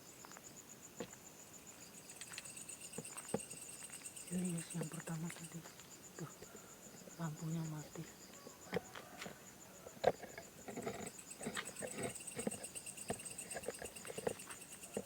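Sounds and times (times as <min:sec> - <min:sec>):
insects chirping in high trills: 0:00.0 - 0:15.0.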